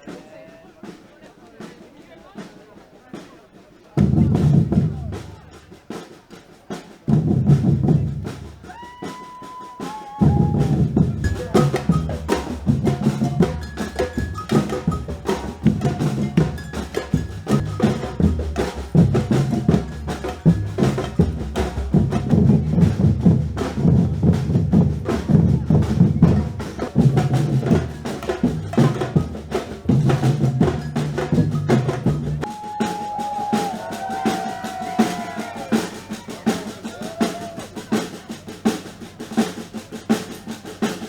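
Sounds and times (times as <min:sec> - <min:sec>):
drum band playing: 0:00.0 - 0:41.0
loud drum hits: 0:10.2 - 0:35.4
whistle call: 0:32.4 - 0:36.1.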